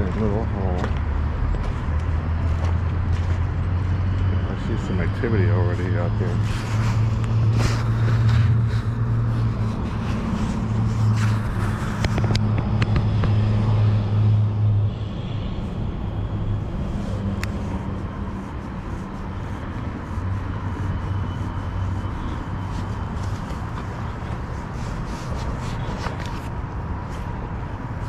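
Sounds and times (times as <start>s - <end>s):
sharp clicks and knocks: 12.0s - 13.4s.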